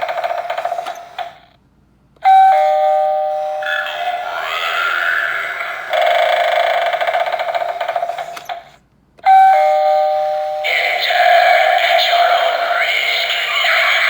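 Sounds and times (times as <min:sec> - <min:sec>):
two-note doorbell chime: 0:02.2 - 0:03.6, 0:09.3 - 0:10.6
eerie wavering sounds: 0:03.6 - 0:06.6, 0:10.6 - 0:14.0.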